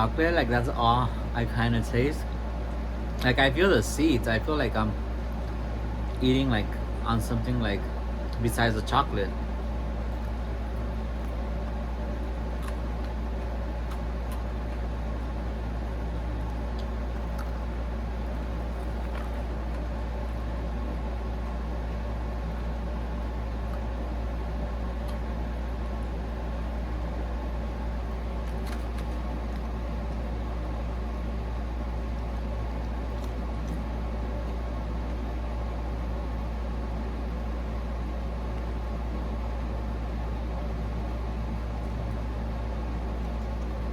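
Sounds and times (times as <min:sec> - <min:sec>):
low mechanical hum: 0:00.0 - 0:43.9.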